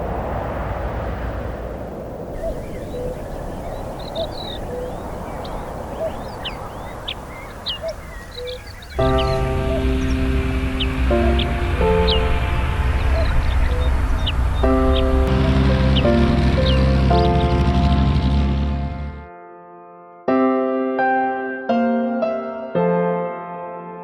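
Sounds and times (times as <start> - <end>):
car passing with low rumble: 0.0 - 19.3
birds chirping and whistling: 2.3 - 17.9
background music with strong bass: 14.2 - 19.3.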